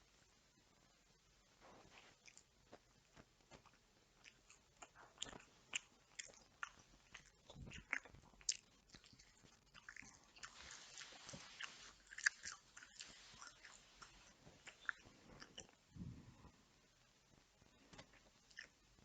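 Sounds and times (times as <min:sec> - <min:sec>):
chewing clicks and smacks: 0:02.2 - 0:10.6, 0:11.6 - 0:15.8, 0:17.9 - 0:19.0.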